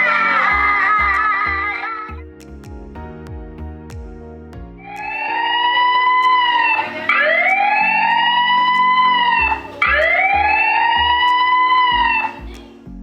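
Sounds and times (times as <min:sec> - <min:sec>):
siren wailing: 0:00.0 - 0:02.1, 0:04.8 - 0:12.3
background music with plucked guitar: 0:00.0 - 0:13.0.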